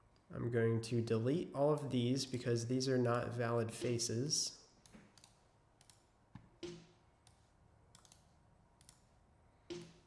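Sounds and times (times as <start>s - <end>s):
computer mouse clicks: 4.8s - 9.1s.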